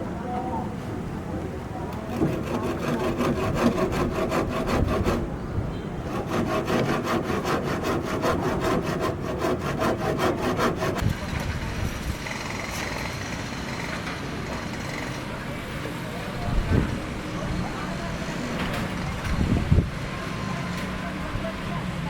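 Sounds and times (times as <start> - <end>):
sawing with quick strokes: 2.0 - 5.3, 6.0 - 13.2.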